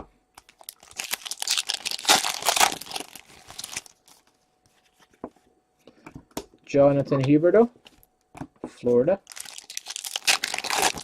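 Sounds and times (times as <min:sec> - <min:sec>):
card pack wrapper tearing: 0:00.5 - 0:04.0, 0:09.3 - 0:11.0.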